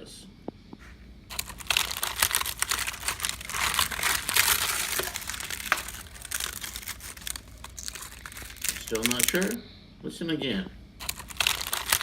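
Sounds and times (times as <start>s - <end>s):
termites crackling in wood: 1.3s - 9.6s, 11.0s - 12.0s.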